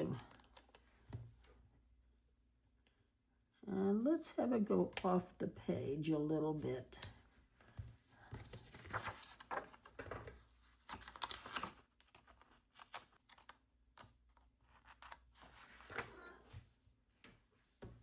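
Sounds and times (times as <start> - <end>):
paper sheets rustling: 7.7 - 12.4.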